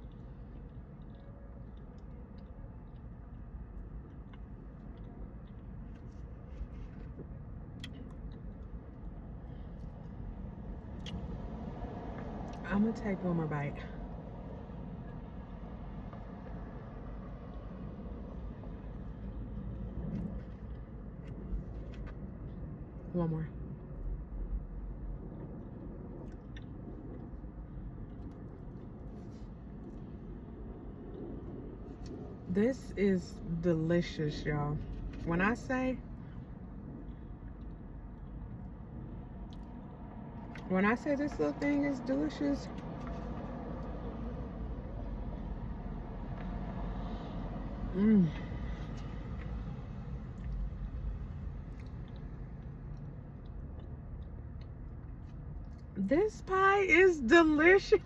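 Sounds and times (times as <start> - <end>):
low background rumble: 0.0 - 58.0
low hum: 0.0 - 58.0.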